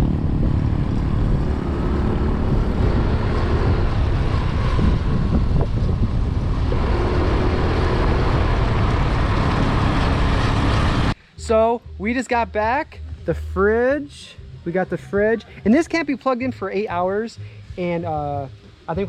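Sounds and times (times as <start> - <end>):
vehicle engine drone: 0.0 - 11.3
road noise: 0.0 - 19.0.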